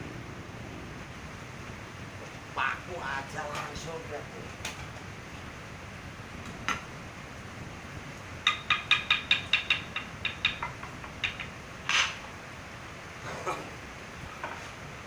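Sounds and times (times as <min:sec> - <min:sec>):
hammer tapping a nail: 0:08.4 - 0:11.6.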